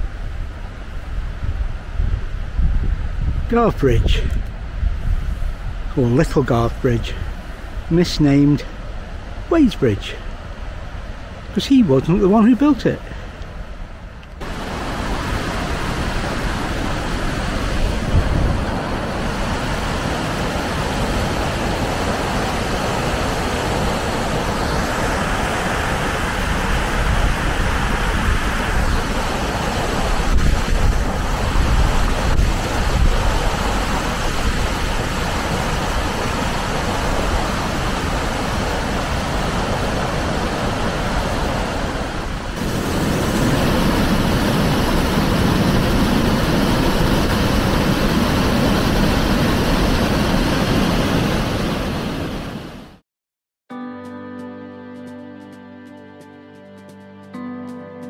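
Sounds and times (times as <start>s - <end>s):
waterfall rushing over rocks: 14.4s - 52.8s.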